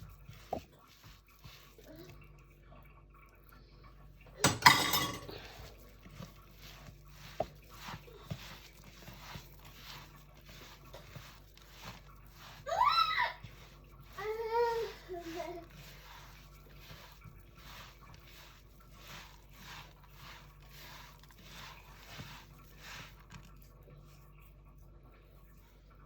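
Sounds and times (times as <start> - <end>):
dishware clattering: 4.4 - 5.5.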